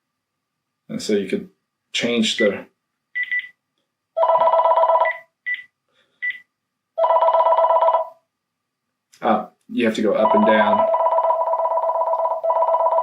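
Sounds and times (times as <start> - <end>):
cordless phone trilling ring: 4.2 - 5.2, 7.0 - 8.1, 10.2 - 13.0.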